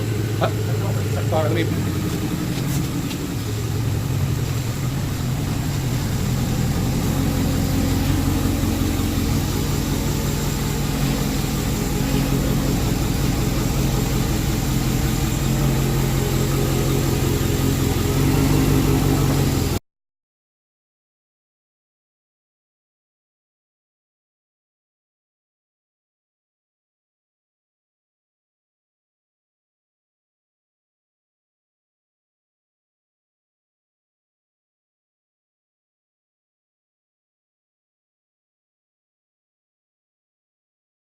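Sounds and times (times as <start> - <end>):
car engine idling: 0.0 - 19.8.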